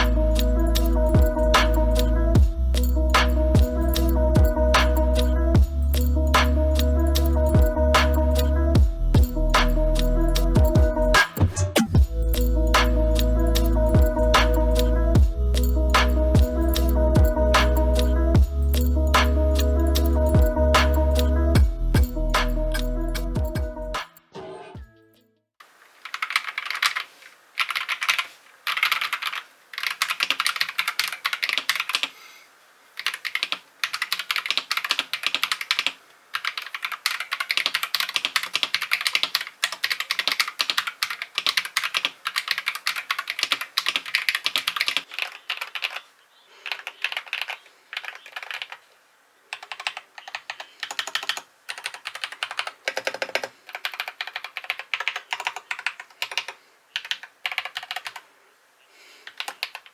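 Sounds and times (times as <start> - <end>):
mechanical keyboard typing: 26.0 - 32.1, 33.0 - 46.0, 46.7 - 48.8, 49.5 - 58.2, 59.3 - 59.9.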